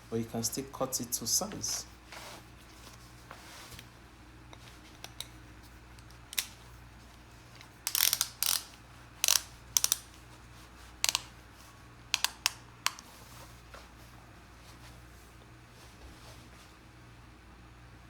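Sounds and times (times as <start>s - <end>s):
ratchet belt buckle clicking: 5.0s - 5.4s, 6.0s - 6.6s, 7.5s - 10.2s, 11.0s - 11.3s, 12.1s - 13.1s.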